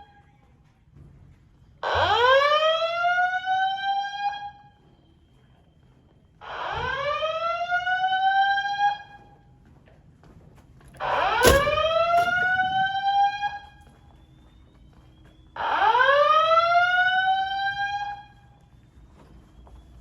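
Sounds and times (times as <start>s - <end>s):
brief knock: 11.0s - 13.0s
fire alarm whoop tone: 15.6s - 18.2s.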